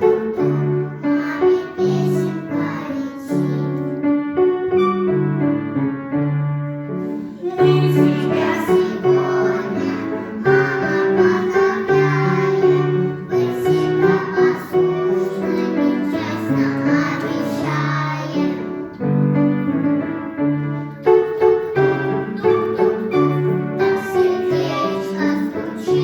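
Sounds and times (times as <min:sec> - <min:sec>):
young children singing: 0:00.0 - 0:04.2, 0:07.2 - 0:19.7, 0:20.4 - 0:26.0
instrumental accompaniment: 0:00.0 - 0:26.0.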